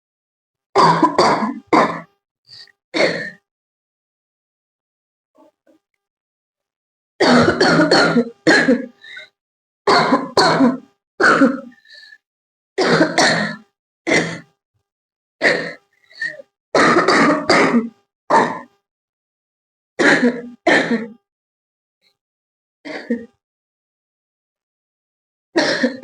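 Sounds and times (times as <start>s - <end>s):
person coughing: 0.8s - 2.1s, 3.0s - 3.4s, 7.2s - 9.2s, 9.9s - 11.8s, 12.8s - 14.5s, 15.4s - 18.7s, 20.0s - 21.2s, 22.9s - 23.3s, 25.6s - 26.0s.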